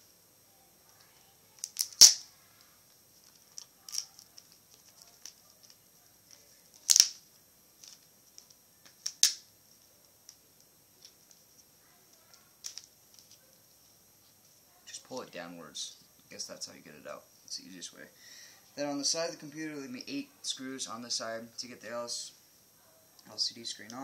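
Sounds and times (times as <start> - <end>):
plastic clicks and snaps: 1.0 - 2.2, 3.2 - 7.2, 7.8 - 10.4, 12.1 - 13.4.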